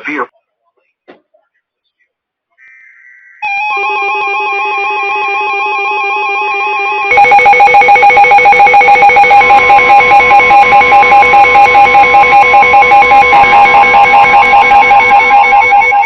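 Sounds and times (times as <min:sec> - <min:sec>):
weather radio alarm warble: 0:03.4 - 0:16.0
steady alert tone: 0:03.6 - 0:16.0.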